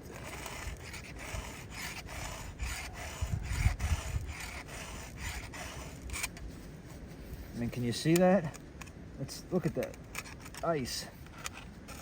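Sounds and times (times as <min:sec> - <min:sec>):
file rasping on chainsaw chain: 0:00.0 - 0:06.4.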